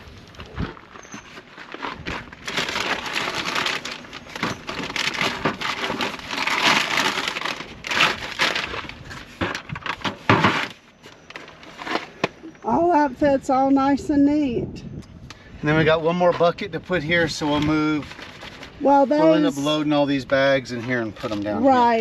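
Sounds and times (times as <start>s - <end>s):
gear rustling and scraping: 0.0s - 12.8s.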